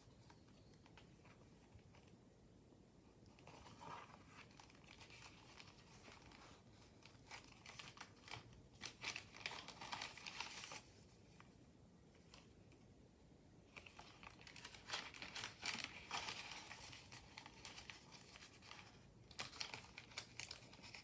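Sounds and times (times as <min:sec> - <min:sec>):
paper pages rustling: 0:03.3 - 0:11.6, 0:13.7 - 0:21.0.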